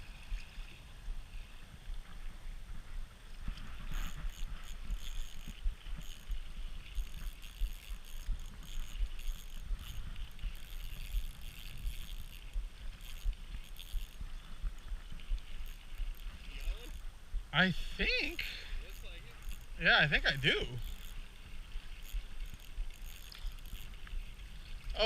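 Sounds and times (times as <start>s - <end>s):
faint rattling: 17.8s - 25.0s.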